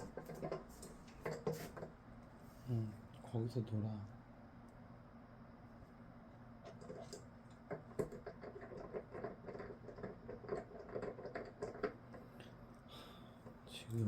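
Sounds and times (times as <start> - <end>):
puppy scratching and pattering: 6.6 - 12.2.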